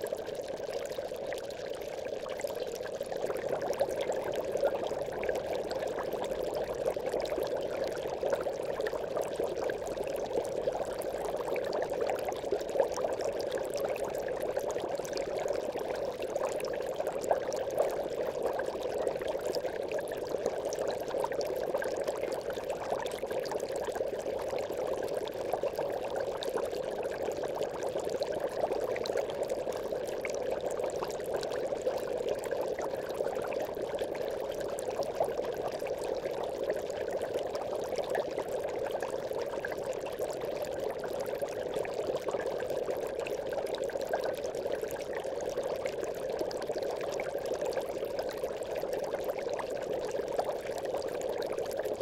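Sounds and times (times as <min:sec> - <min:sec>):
aquarium water bubbling: 0:00.0 - 0:52.0.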